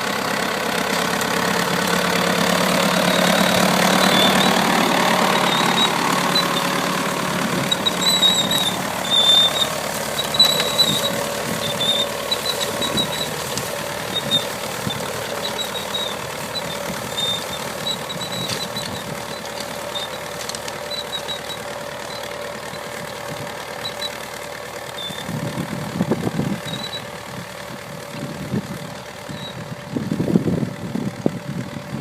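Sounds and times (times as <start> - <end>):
tractor engine running: 0.0 - 32.0.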